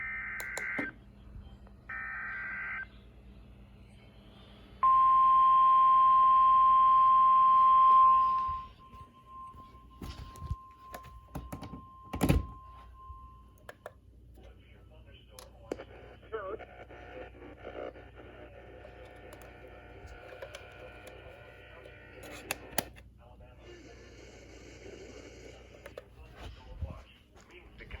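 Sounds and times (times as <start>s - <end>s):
scattered clicks: 0.4s - 0.9s.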